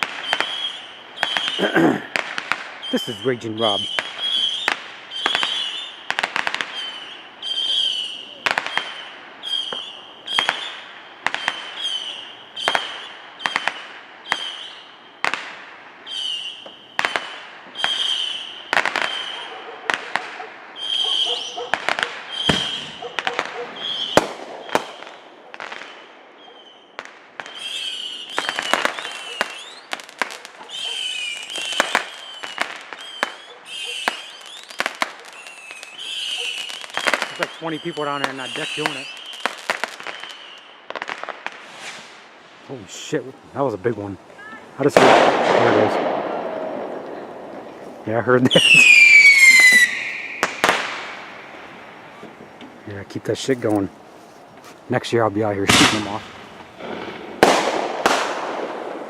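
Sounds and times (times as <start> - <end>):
deep fireworks booms: 0.0 - 21.0, 21.7 - 53.9, 54.8 - 59.0
fireworks bangs and crackles: 0.0 - 59.0.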